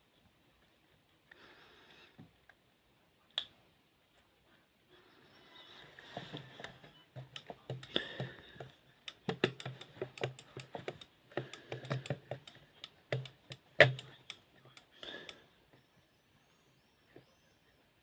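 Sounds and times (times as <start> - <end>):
remote control clicking: 6.4 - 15.4.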